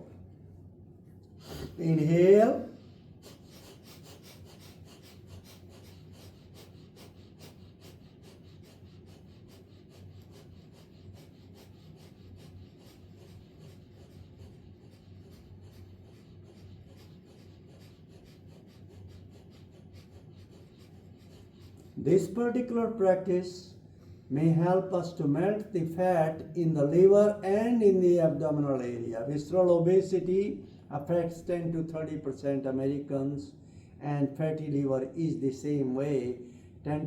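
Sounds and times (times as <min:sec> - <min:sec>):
low steady hum: 0:00.0 - 0:37.0
forceful nasal exhalations: 0:01.4 - 0:01.8.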